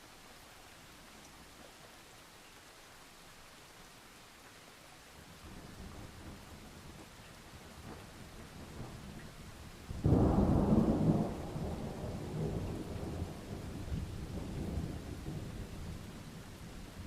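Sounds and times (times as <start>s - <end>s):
steady rain: 0.0s - 17.0s
thunder crack and rumble: 9.9s - 17.0s.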